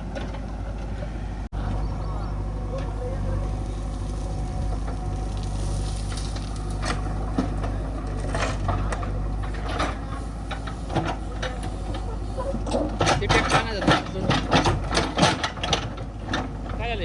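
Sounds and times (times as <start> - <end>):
diesel engine running: 0.0 - 17.0
short knocks and clatters: 3.4 - 16.8.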